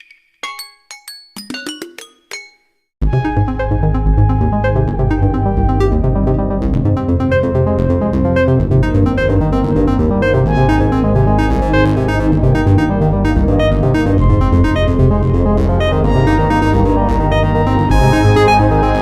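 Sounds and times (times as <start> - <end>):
electronic synthesizer ringtone: 8.8 - 19.0.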